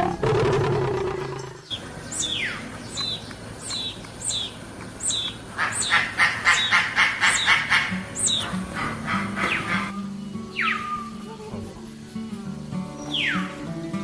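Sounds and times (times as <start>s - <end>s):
bird chattering: 0.0s - 11.8s, 13.0s - 13.6s
bird chirps sliding downward: 9.5s - 11.4s, 13.0s - 13.5s.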